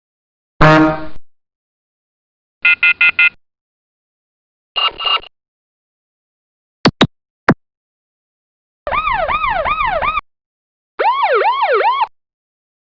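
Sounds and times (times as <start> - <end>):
yelping siren: 8.9 - 10.2, 11.0 - 12.1.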